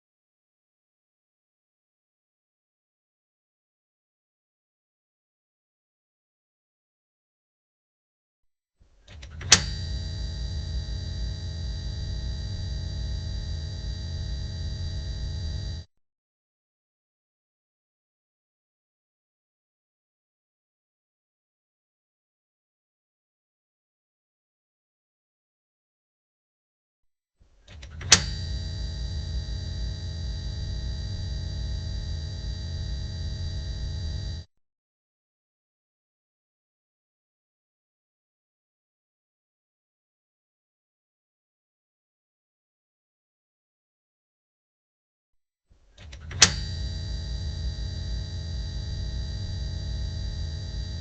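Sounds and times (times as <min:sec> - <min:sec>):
electrical buzz and hum: 0:09.1 - 0:15.9, 0:27.7 - 0:34.5, 0:46.0 - 0:51.0
thin high whine: 0:09.4 - 0:15.9, 0:28.0 - 0:34.5, 0:46.1 - 0:51.0.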